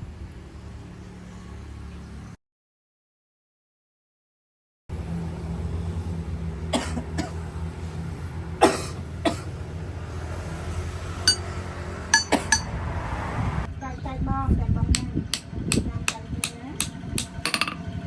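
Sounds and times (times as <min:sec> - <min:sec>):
low machine hum: 0:04.9 - 0:12.8
sharp metal knocks of rebar: 0:11.3 - 0:11.5, 0:12.1 - 0:12.7, 0:15.0 - 0:17.8
light metallic clinks: 0:11.3 - 0:11.6, 0:12.2 - 0:12.7.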